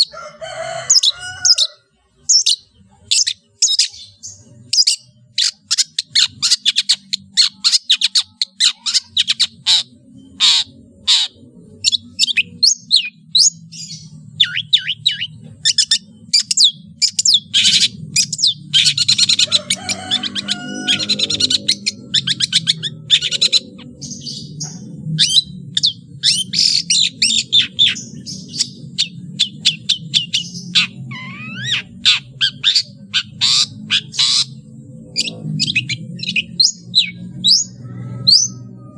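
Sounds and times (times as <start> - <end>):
bird singing chattering song: 0.0 - 38.9
steady low hum: 0.0 - 38.9.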